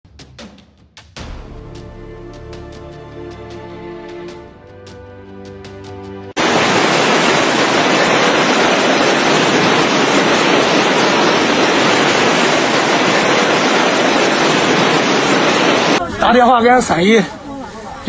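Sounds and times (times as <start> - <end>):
music: 0.0 - 6.4
water rushing: 1.2 - 16.0.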